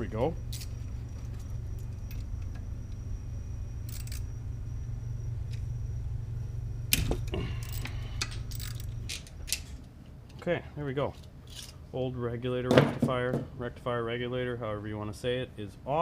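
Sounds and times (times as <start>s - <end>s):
metal tools and bolts clinking: 0.0s - 2.3s, 3.9s - 4.3s, 7.0s - 10.4s, 11.1s - 11.8s
steady low hum: 0.0s - 16.0s.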